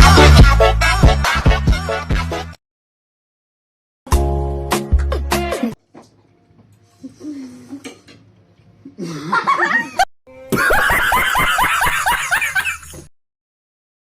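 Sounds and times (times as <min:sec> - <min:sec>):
music: 0:00.0 - 0:02.6, 0:04.1 - 0:07.0, 0:10.3 - 0:10.5
loud laughter: 0:09.0 - 0:13.1.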